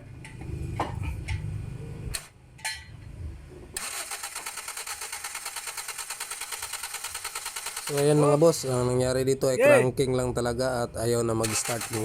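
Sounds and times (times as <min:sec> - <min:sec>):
car starter motor cranking: 0:03.8 - 0:08.2, 0:11.4 - 0:12.0.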